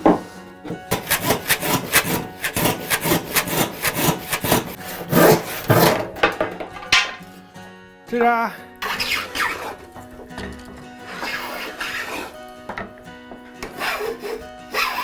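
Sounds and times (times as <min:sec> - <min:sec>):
hand saw cutting wood: 0:00.1 - 0:06.2, 0:08.8 - 0:12.5, 0:13.6 - 0:15.0.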